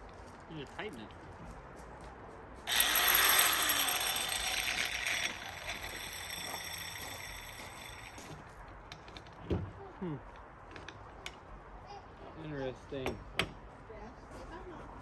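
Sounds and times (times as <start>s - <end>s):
angle grinder whining: 2.7s - 8.4s.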